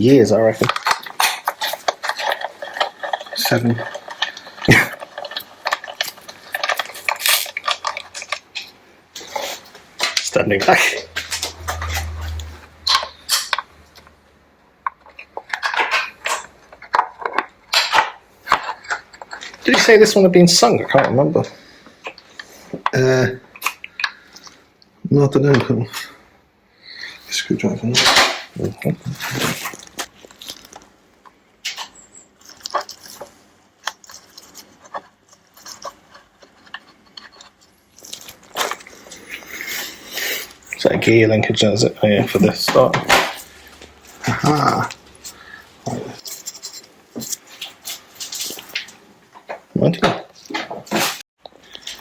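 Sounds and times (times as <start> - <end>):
low hum: 10.5 - 14.1
clicks and knocks of metal parts: 14.8 - 19.9.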